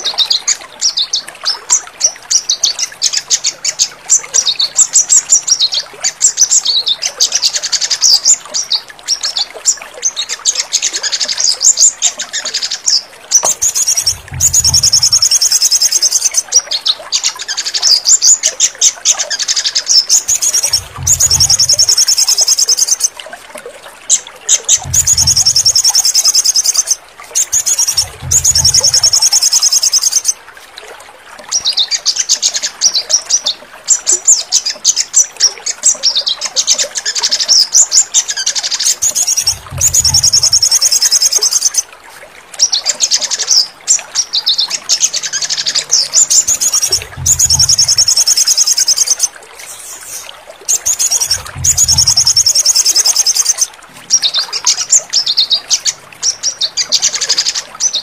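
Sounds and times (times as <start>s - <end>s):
bird chirping and trilling: 0.0s - 23.2s, 24.1s - 30.4s, 31.5s - 41.9s, 42.6s - 58.0s
low hum: 13.7s - 15.2s, 20.6s - 21.9s, 28.0s - 29.0s.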